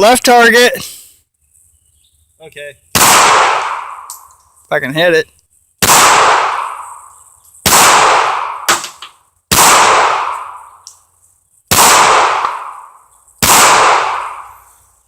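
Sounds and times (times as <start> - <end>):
pistol shots with echo: 2.9 - 4.3, 5.8 - 7.0, 7.6 - 10.8, 11.7 - 14.7.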